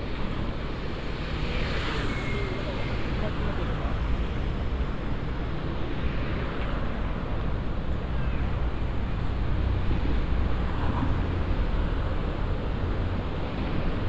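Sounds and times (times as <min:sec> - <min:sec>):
low city rumble: 0:00.0 - 0:14.0.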